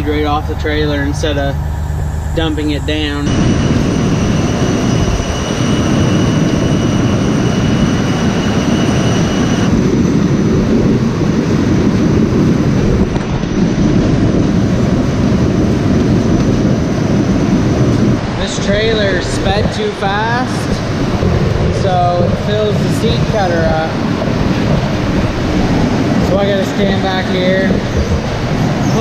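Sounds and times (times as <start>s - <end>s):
faint high whine: 0.0s - 11.3s.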